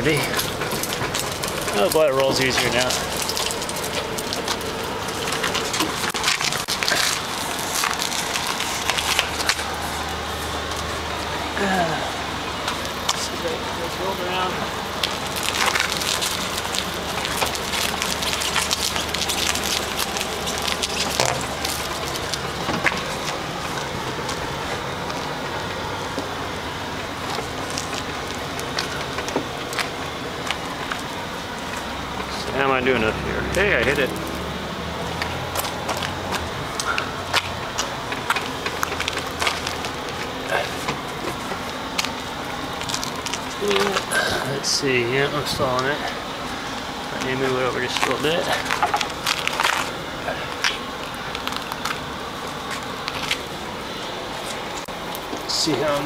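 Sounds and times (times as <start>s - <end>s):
tyres crunching over rough ground: 0.0s - 56.0s.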